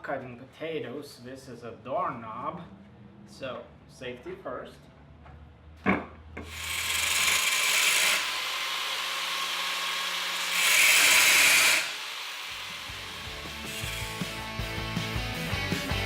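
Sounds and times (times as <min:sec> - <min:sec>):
angle grinder grinding metal: 0:06.4 - 0:14.6.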